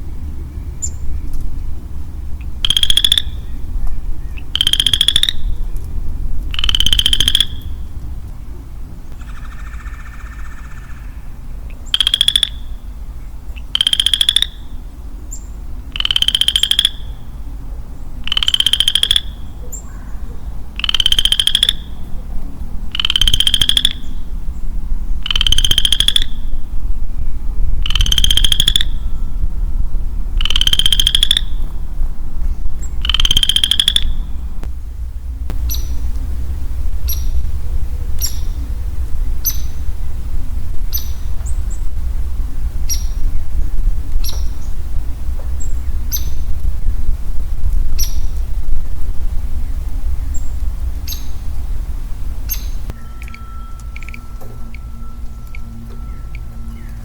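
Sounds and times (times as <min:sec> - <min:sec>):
frog calling in pulsed trills: 0:02.5 - 0:05.7, 0:06.5 - 0:07.9, 0:09.2 - 0:12.8, 0:13.6 - 0:14.8, 0:15.9 - 0:17.3, 0:18.2 - 0:19.9, 0:20.8 - 0:22.1, 0:22.9 - 0:24.3, 0:25.2 - 0:26.7, 0:27.8 - 0:29.5, 0:30.4 - 0:31.8, 0:32.9 - 0:34.5, 0:35.6 - 0:36.1, 0:37.0 - 0:44.8, 0:52.4 - 0:57.0
faint high chirps: 0:52.5 - 0:57.0.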